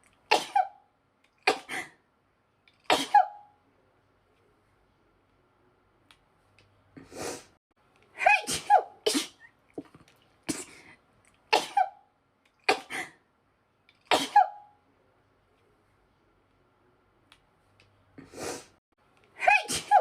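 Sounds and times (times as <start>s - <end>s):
woman sneezing: 8.2s - 9.5s, 14.1s - 14.6s, 19.4s - 20.0s.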